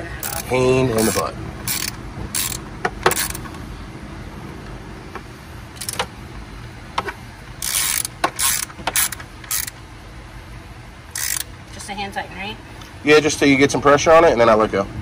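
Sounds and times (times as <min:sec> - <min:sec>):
ratchet wrench clicking: 0:00.2 - 0:03.4, 0:05.8 - 0:06.1, 0:07.6 - 0:09.8, 0:11.1 - 0:11.6.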